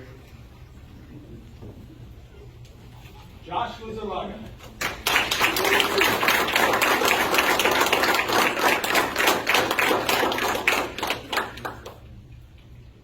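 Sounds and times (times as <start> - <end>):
audience applauding: 4.8 - 12.0.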